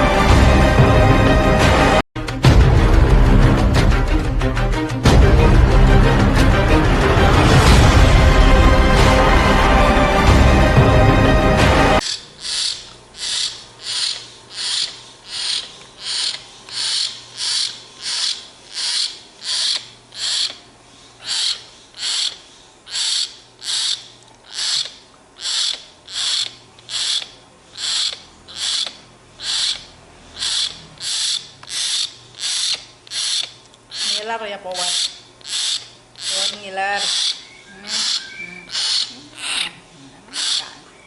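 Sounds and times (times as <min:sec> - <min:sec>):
myna begging calls: 0:25.4 - 0:41.0.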